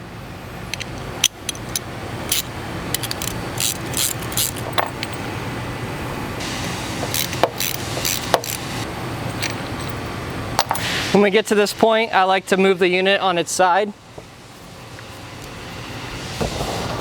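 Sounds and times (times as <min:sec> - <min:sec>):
steady low hum: 0:00.0 - 0:12.5
hand tools clicking on metal: 0:00.7 - 0:05.2, 0:07.0 - 0:10.0.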